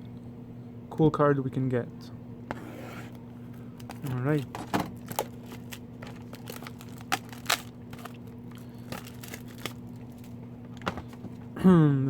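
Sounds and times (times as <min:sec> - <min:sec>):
steady low hum: 0:00.0 - 0:12.0
cardboard and wrapping crinkling: 0:02.6 - 0:11.4.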